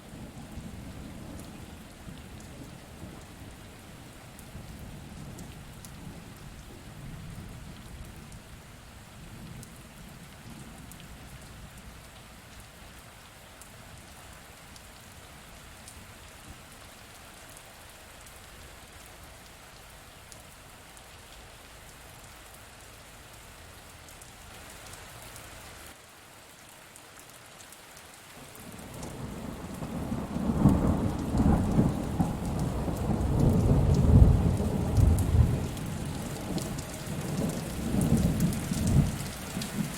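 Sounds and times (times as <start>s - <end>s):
steady rain falling: 0.0s - 39.9s
thunder rumbling: 28.8s - 39.9s.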